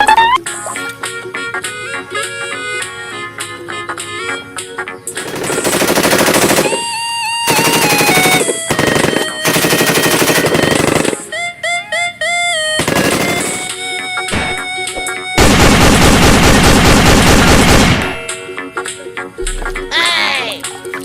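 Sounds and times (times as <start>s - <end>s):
stepped beeping tunes: 0.0s - 0.9s, 5.7s - 15.4s
toy machine-gun fire: 5.2s - 6.9s, 7.5s - 11.3s, 12.8s - 14.6s, 15.4s - 18.3s.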